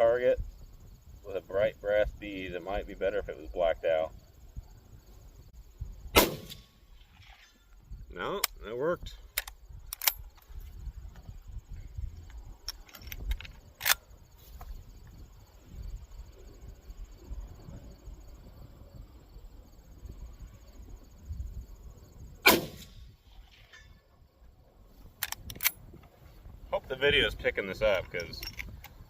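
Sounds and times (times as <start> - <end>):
wind rumbling on microphone: 0.0 - 29.0
rifle shot: 6.1 - 6.8, 22.4 - 23.1
sharp clicks: 9.3 - 10.5, 12.2 - 14.1, 25.2 - 25.8.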